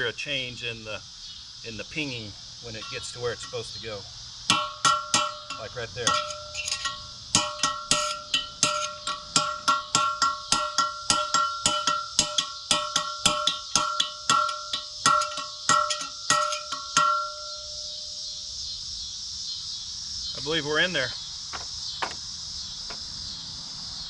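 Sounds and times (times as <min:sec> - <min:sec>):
hammer striking metal punch: 0:02.8 - 0:03.8, 0:04.5 - 0:17.9.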